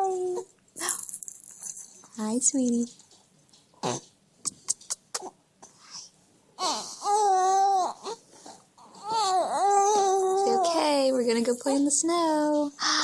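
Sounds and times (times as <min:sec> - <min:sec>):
child whining cry: 0:06.6 - 0:08.2, 0:08.8 - 0:10.8.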